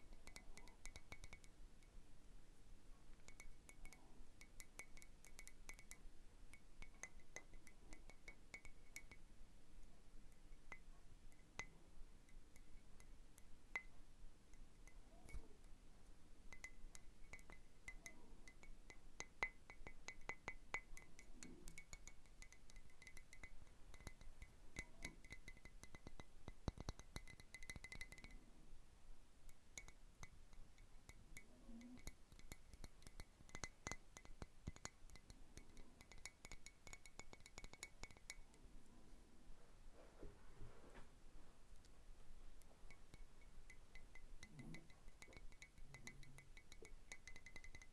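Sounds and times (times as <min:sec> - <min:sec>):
fingernails tapping on glass bauble: 0:00.1 - 0:01.9, 0:03.1 - 0:09.3, 0:10.3 - 0:14.0, 0:16.5 - 0:28.6, 0:29.5 - 0:38.6, 0:42.6 - 0:47.9.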